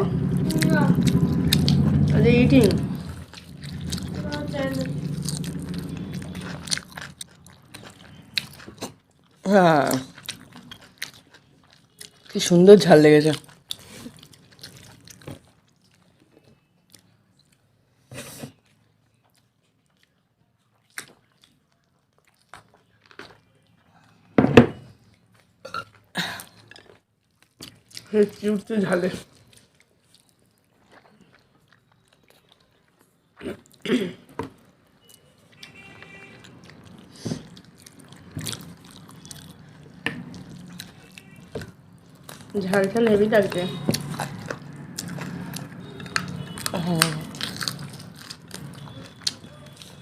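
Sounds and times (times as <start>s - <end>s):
person chewing food: 0.1s - 50.0s
sharp mouth sounds and bites: 36.8s - 50.0s.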